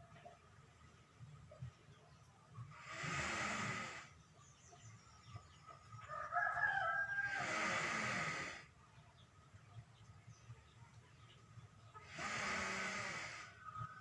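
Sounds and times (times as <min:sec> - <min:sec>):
cow snoring: 0:02.7 - 0:04.2, 0:07.3 - 0:08.7, 0:12.0 - 0:14.0.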